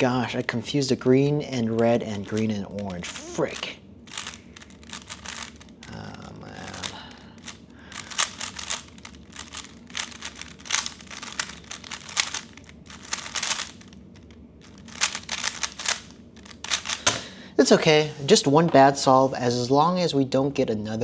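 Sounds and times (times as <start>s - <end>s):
puzzle cube plastic clicks: 1.6s - 6.0s, 6.6s - 17.2s.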